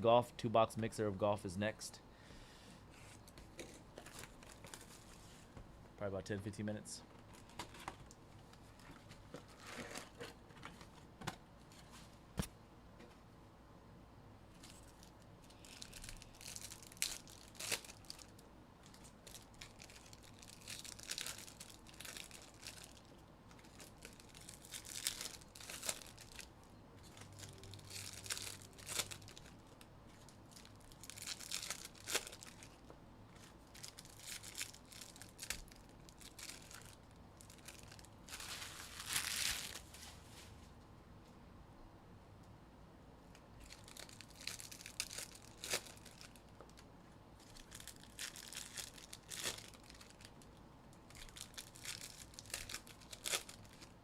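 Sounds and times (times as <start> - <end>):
card pack wrappers tearing: 15.6 - 18.3, 18.9 - 26.5, 27.2 - 32.8, 33.7 - 39.9, 43.6 - 46.4, 47.4 - 50.4, 51.1 - 53.9.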